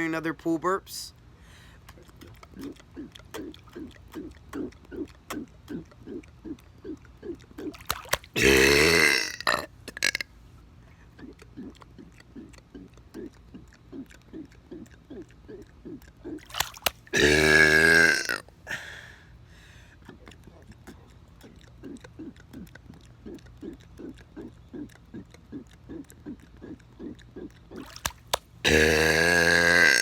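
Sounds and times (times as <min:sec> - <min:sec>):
person burping: 0:08.3 - 0:10.3, 0:17.1 - 0:19.0, 0:28.6 - 0:30.0.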